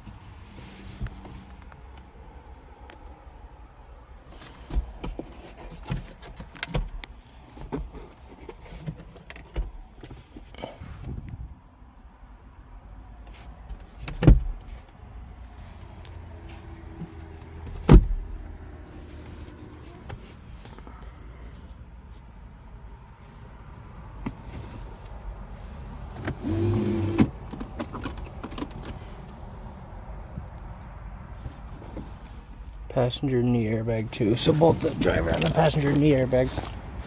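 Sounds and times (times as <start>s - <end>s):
knocks on car: 17.8s - 18.2s.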